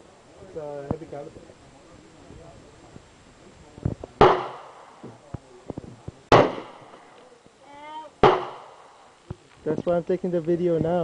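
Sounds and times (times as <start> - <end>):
rifle shots with echo: 4.2 - 5.1, 6.3 - 7.2, 8.2 - 9.2.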